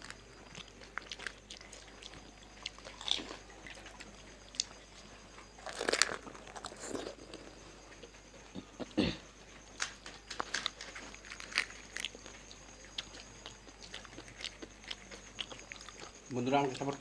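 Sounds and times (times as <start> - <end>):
crisp shells crunching: 5.6 - 7.1, 9.8 - 12.2.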